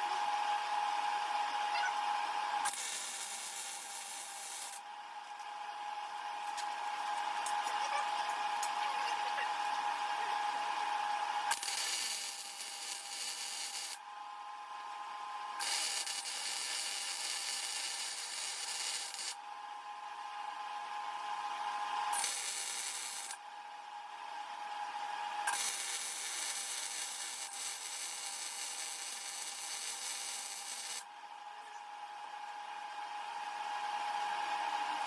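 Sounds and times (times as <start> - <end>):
grinder motor whine: 0.0 - 23.4, 24.4 - 31.1
angle grinder cutting metal: 2.6 - 4.8, 11.5 - 14.0, 15.6 - 19.4, 22.1 - 23.4, 25.5 - 31.0.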